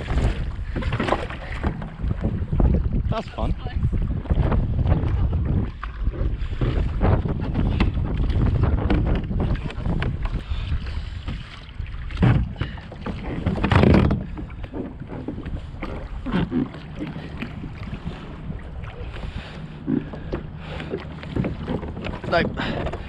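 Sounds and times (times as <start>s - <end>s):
water splashing against kayak: 0.0s - 23.0s
wind buffeting microphone: 0.0s - 23.0s.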